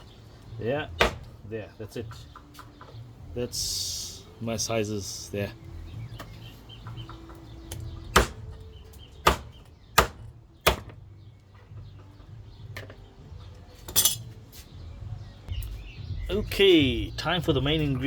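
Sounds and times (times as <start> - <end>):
blade chopping bony chicken: 1.0 - 1.3, 8.1 - 8.4.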